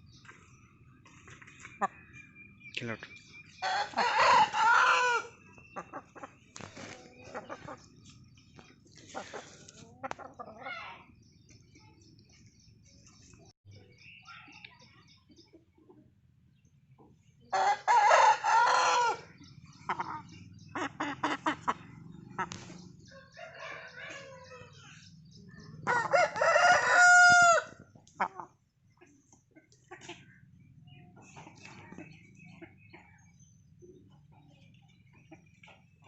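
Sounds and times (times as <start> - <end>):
chicken clucking: 3.6 - 10.7, 17.6 - 24.4, 25.8 - 30.3
faint high bird chirps: 10.6 - 15.7
rooster crowing: 23.1 - 24.5, 25.9 - 27.7.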